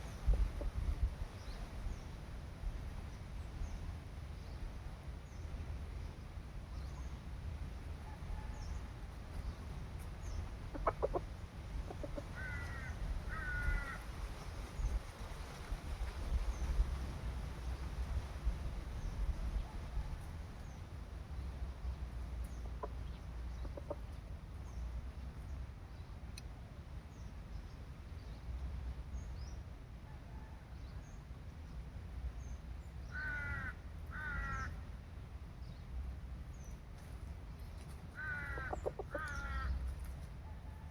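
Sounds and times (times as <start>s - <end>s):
wind rumble on microphone: 0.0s - 26.2s
rooster clucking: 10.7s - 12.9s, 38.2s - 39.8s
harsh bird calls: 38.2s - 39.8s.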